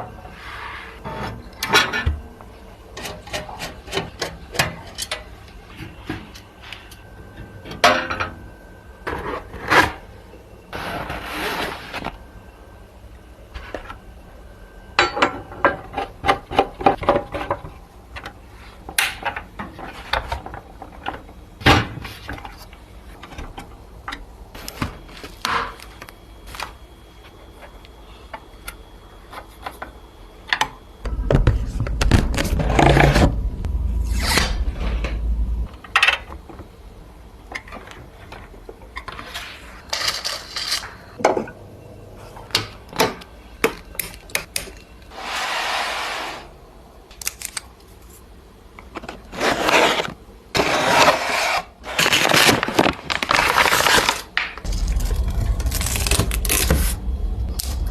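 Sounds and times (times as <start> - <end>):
heavy handling rumble: 31.1 - 35.8, 54.6 - 57.9.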